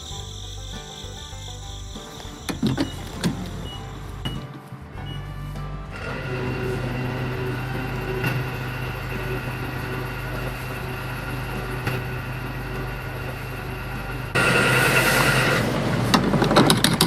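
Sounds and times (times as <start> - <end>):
small motor humming: 6.0 - 15.4.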